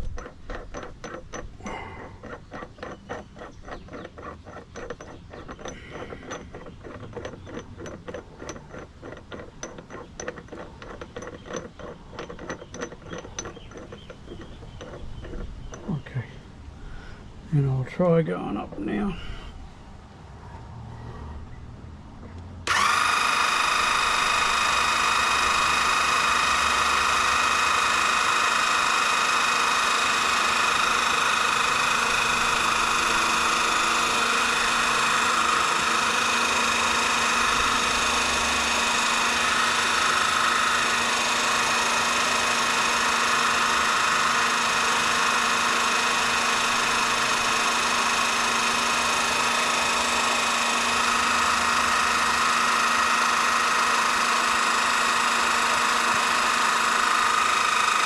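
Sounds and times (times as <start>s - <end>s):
electric jack motor whining: 0.0s - 16.2s, 22.6s - 58.0s.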